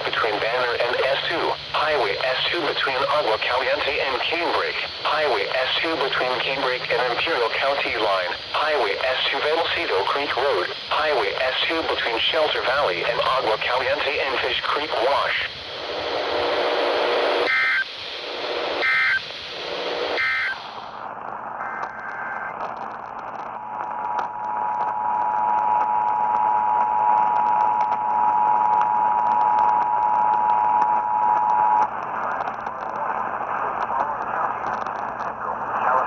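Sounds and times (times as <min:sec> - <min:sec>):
digital data bursts: 0:00.0 - 0:15.5, 0:17.3 - 0:20.9
radio static hiss and crackle: 0:00.0 - 0:36.0.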